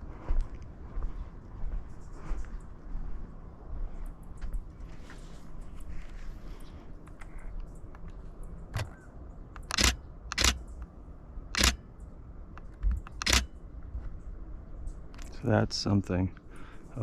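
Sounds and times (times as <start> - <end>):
camera shutter clicks: 9.6 - 10.7, 11.5 - 11.8, 13.0 - 13.5.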